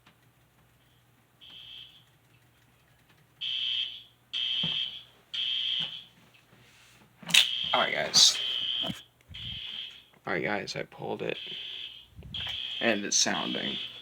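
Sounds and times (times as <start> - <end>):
fire alarm beeping: 1.4 - 2.0, 3.4 - 6.1, 7.4 - 10.1, 11.4 - 14.0.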